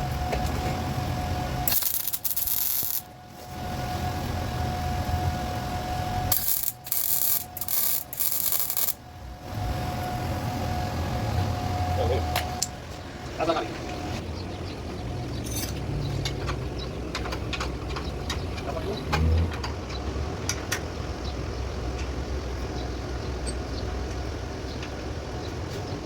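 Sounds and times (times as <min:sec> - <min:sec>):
low workshop hum: 0:00.0 - 0:26.0
welder arcing in bursts: 0:01.6 - 0:10.1.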